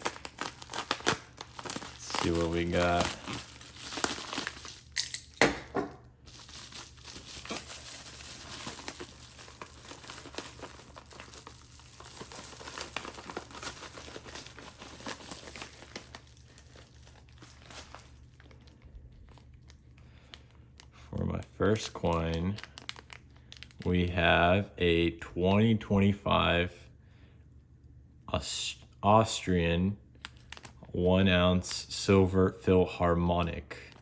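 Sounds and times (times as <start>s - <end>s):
plastic crinkling: 0.0s - 5.4s, 6.0s - 21.0s, 21.6s - 24.1s, 30.2s - 30.9s
plastic packaging ripping: 0.0s - 5.4s, 6.2s - 20.9s, 21.6s - 23.9s, 30.2s - 30.8s.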